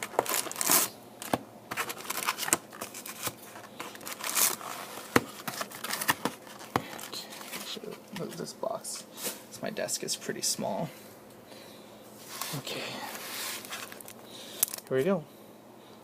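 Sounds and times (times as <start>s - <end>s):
plastic wrapping crinkling: 0.0s - 8.4s, 12.3s - 14.9s.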